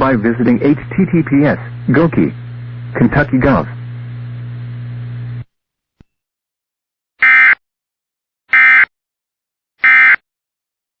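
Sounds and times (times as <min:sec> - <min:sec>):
low hum: 0:00.0 - 0:05.5.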